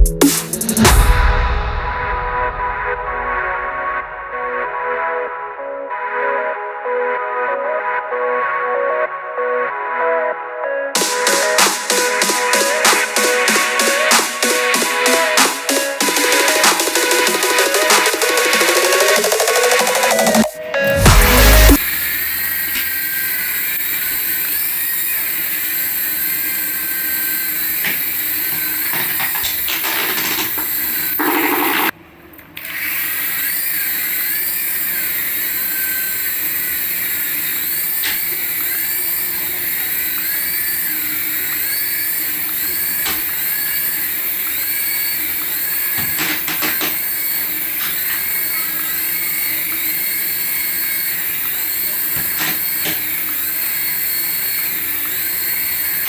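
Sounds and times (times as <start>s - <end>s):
small electric motor whining: 11.0s - 32.0s, 32.6s - 56.0s.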